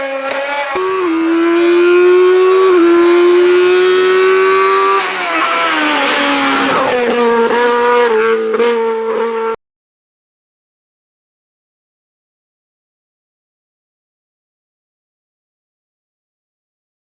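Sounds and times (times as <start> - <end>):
car engine screaming at high revs: 0.8 - 9.5.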